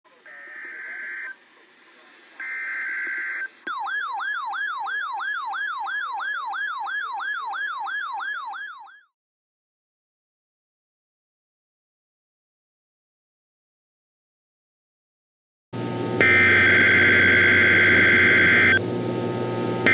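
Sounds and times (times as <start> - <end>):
electronic warbling siren: 0.3 - 1.4, 2.4 - 9.1, 16.2 - 18.8
buzzing data tones: 16.2 - 18.8.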